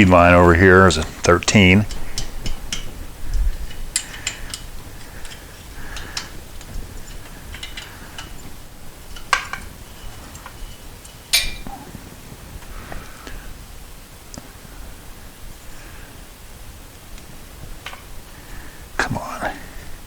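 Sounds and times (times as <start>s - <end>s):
metal hand tools clinking: 0.0s - 11.8s
wrench clanking: 0.0s - 11.8s.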